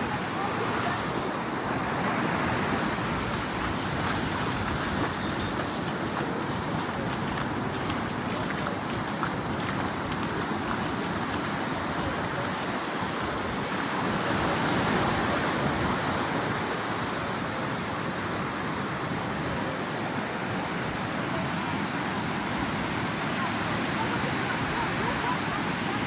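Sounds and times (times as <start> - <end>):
surf washing onto beach: 0.0 - 26.0.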